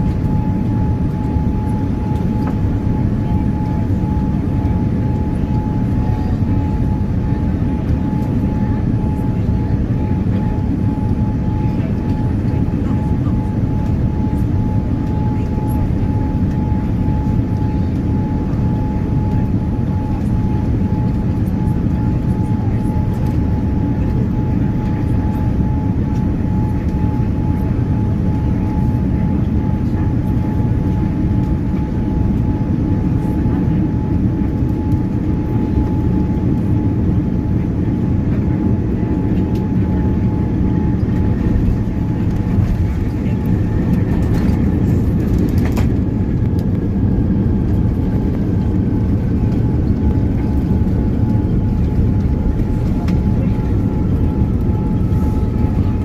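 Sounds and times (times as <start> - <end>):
jet engines rumbling: 0.0 - 56.0
thin steady whine: 0.0 - 56.0.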